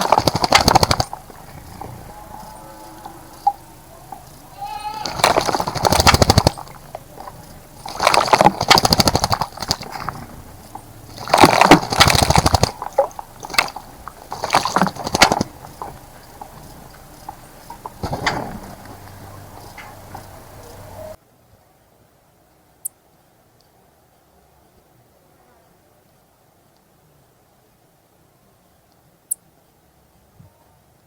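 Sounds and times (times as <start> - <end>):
bird wing flutters: 0.0 - 21.1
bird splashing in water: 0.0 - 21.2.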